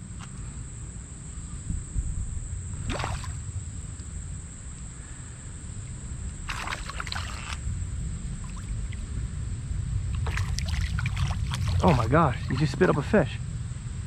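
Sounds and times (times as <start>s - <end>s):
low steady rumble: 0.0s - 14.0s
fish splashing in water: 2.8s - 3.5s, 6.4s - 9.1s, 10.1s - 13.3s.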